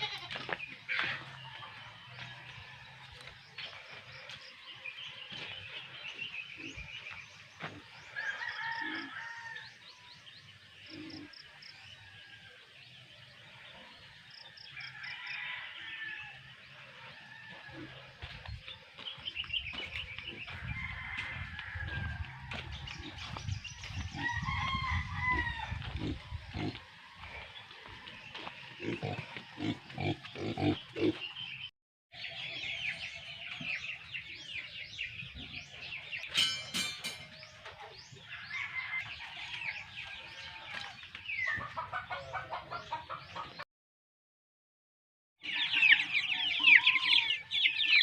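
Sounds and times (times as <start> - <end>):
rooster crowing: 8.2 - 9.8, 14.7 - 16.5, 20.5 - 22.8, 24.1 - 26.0
hens clucking: 40.7 - 43.6.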